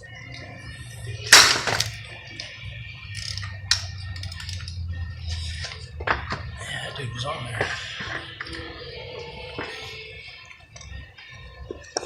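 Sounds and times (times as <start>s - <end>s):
bolt breaking loose crack: 1.3s - 2.0s
wrench clicking: 3.2s - 4.8s.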